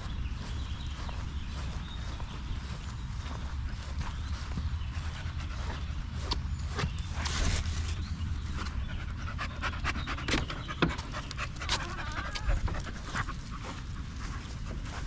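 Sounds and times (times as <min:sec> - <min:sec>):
dog panting: 0:08.4 - 0:15.0.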